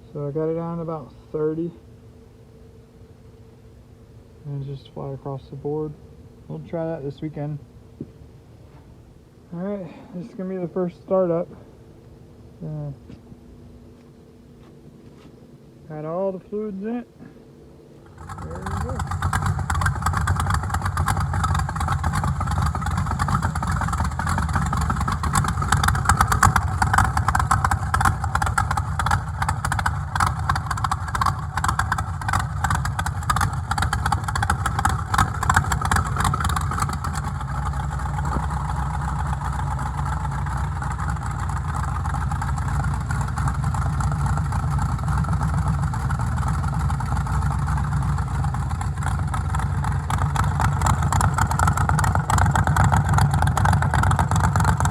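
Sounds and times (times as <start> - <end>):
car engine idling: 17.4 - 54.9.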